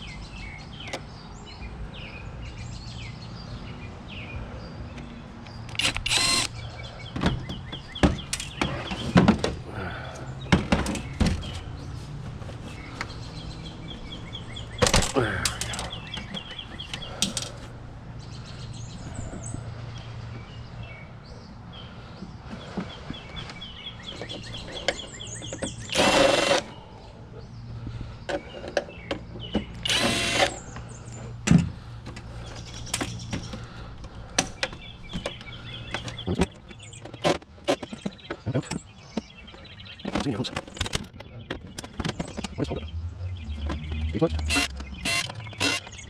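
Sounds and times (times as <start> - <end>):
handheld power tool running: 5.8 - 6.5, 25.9 - 26.7, 29.8 - 30.6, 44.5 - 45.9.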